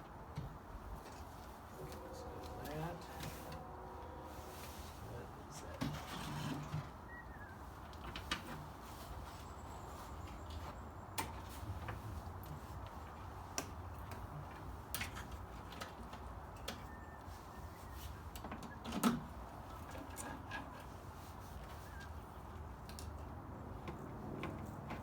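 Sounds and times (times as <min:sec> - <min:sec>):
light clicks and knocks of parts: 0:07.8 - 0:09.3, 0:10.2 - 0:17.1, 0:18.1 - 0:25.0.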